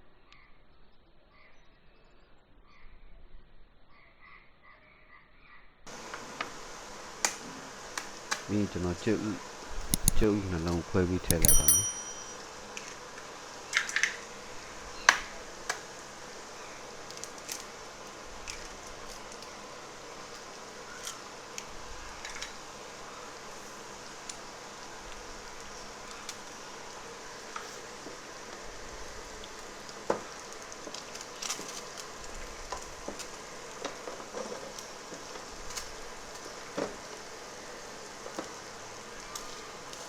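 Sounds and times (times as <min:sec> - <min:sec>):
food sizzling in a pan: 0:05.9 - 0:08.5, 0:12.5 - 0:40.0
oil popping and crackling: 0:13.7 - 0:14.2, 0:25.1 - 0:36.6.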